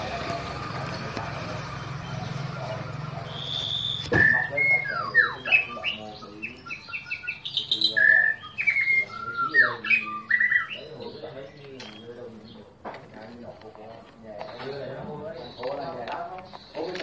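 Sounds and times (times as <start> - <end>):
bird singing whistled song: 1.7 - 11.2.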